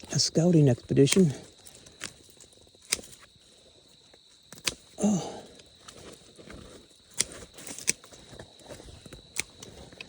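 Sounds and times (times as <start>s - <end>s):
brush snapping: 2.8s - 3.3s, 4.5s - 5.0s, 7.1s - 8.1s.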